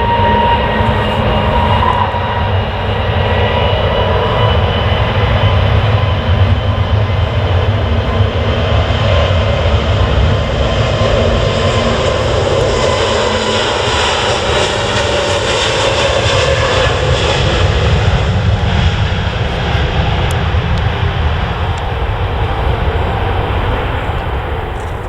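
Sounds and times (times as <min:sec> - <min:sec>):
jet engines roaring: 0:00.0 - 0:25.0.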